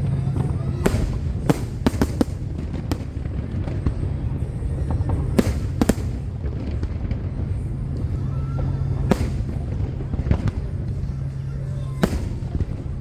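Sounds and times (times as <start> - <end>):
constant low rumble: 0.0 - 13.0
fireworks bangs and cracks: 0.0 - 13.0.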